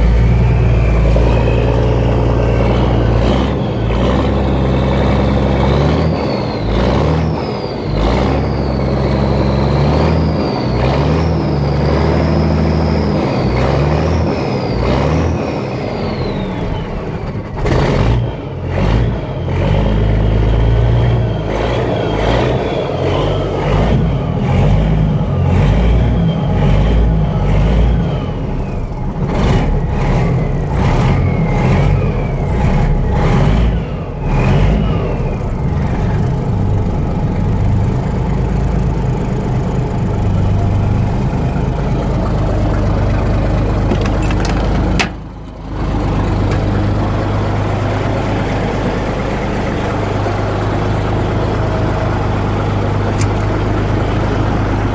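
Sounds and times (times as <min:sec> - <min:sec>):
turbo whistle: 0:00.0 - 0:05.0
diesel truck engine revving: 0:00.0 - 0:54.9.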